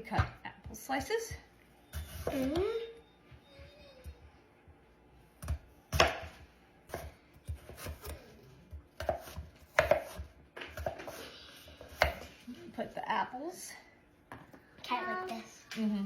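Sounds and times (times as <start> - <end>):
knife chopping apple: 1.9 - 2.7, 5.4 - 11.2, 11.8 - 12.3.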